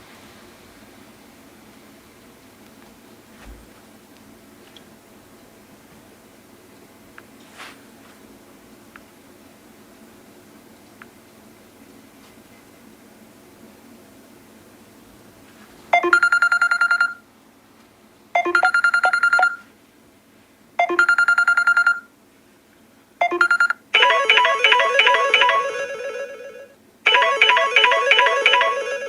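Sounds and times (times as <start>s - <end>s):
melodic ringtone: 16.0s - 17.1s, 18.4s - 19.6s, 20.8s - 22.0s, 23.2s - 29.0s
electronic trilling ringtone: 16.0s - 17.2s, 18.4s - 19.6s, 20.8s - 22.1s, 23.2s - 29.0s.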